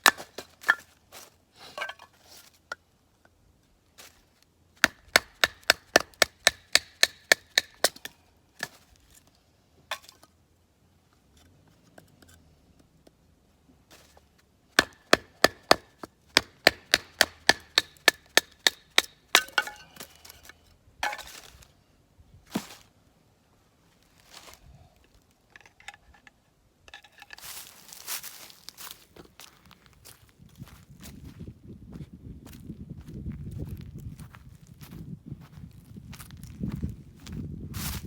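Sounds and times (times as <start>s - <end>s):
knife chopping on wooden board: 14.8s - 19.5s.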